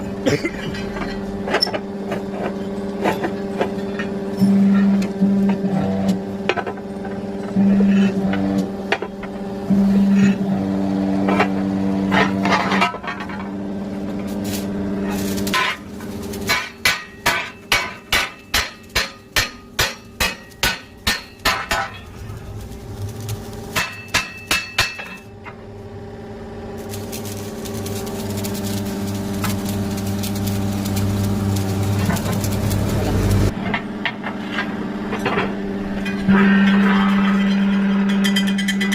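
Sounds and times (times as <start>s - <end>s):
steady engine hum: 0.0s - 38.9s.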